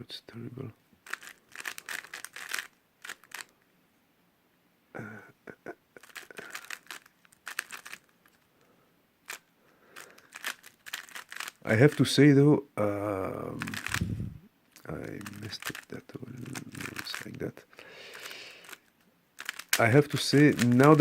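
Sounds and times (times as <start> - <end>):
puzzle cube clicking as turned: 1.0 - 3.5, 6.0 - 8.4, 9.3 - 12.0, 13.6 - 14.2, 15.2 - 17.4, 18.1 - 21.0.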